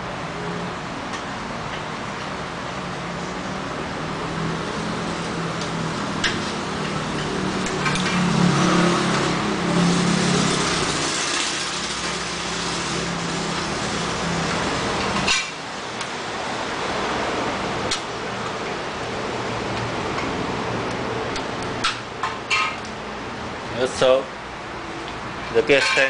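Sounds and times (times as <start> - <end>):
steady mechanical hum: 0.0 - 26.0
metal tools clinking and knocking: 25.5 - 26.0.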